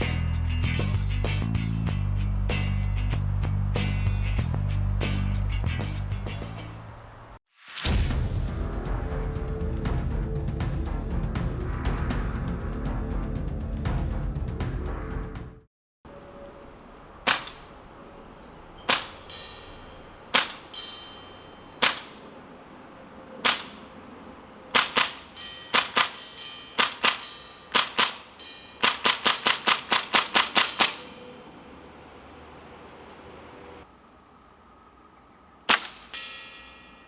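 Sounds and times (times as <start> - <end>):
airsoft pistol shots: 17.2 - 17.9, 18.9 - 19.7, 20.3 - 20.9, 21.8 - 22.4, 23.4 - 24.0, 24.7 - 31.2, 35.7 - 36.4.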